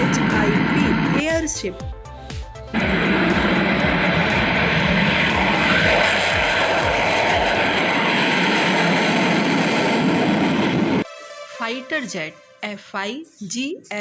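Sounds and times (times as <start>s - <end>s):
propeller engines droning: 0.0s - 11.1s.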